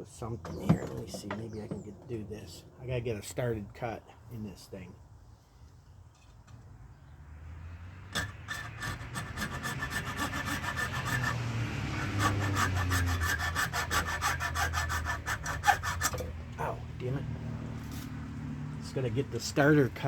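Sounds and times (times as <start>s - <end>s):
hand saw strokes: 8.1s - 16.7s.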